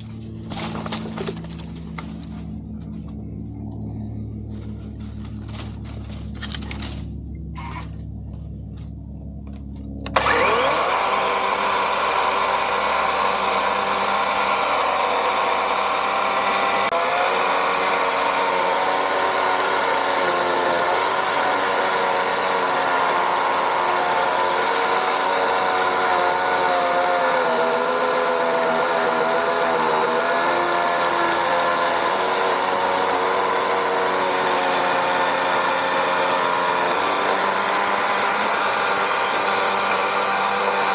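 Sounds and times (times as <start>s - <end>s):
chainsaw high whine: 0.0s - 3.5s, 4.3s - 8.2s, 9.9s - 40.9s
low rumble: 0.0s - 10.2s.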